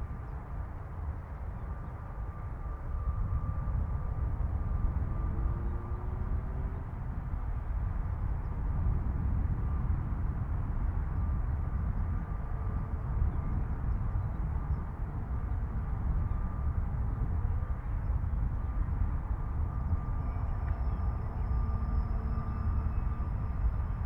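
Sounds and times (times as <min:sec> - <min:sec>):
distant aircraft engines rumbling: 0:00.2 - 0:24.0
faint high whine: 0:11.0 - 0:24.0.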